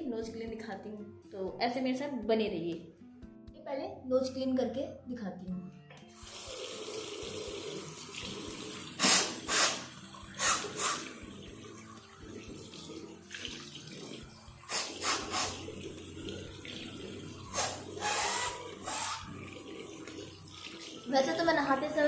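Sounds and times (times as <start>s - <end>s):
tap running into basin: 6.2s - 21.9s.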